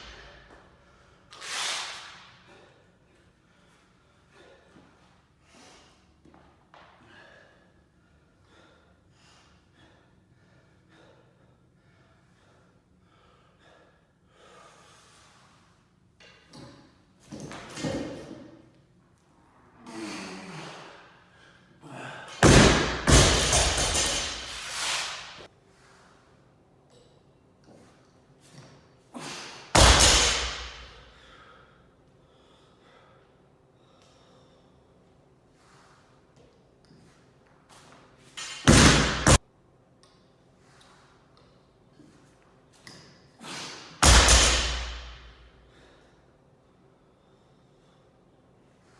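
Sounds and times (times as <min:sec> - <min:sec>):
person breathing quickly: 0:07.0 - 0:15.6
barbell crashing onto platform: 0:22.4 - 0:24.6, 0:29.8 - 0:30.9, 0:44.0 - 0:45.3.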